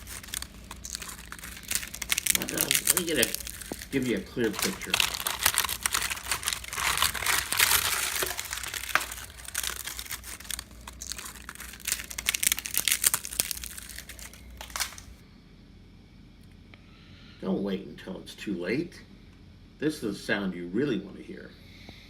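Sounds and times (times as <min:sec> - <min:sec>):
termites crackling in wood: 0:00.0 - 0:15.2.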